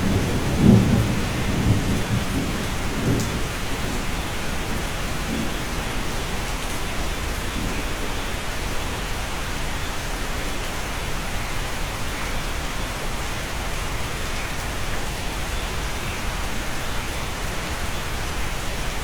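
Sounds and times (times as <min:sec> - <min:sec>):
steady rain hiss: 0:00.0 - 0:19.0.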